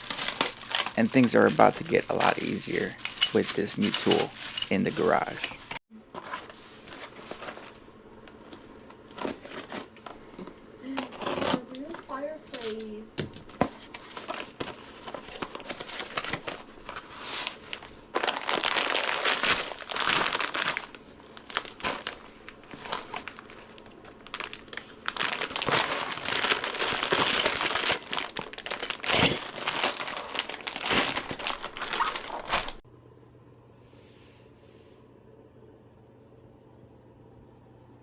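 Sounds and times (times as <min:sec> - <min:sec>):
packaging crinkling and rustling: 0:00.0 - 0:07.7, 0:13.4 - 0:32.8.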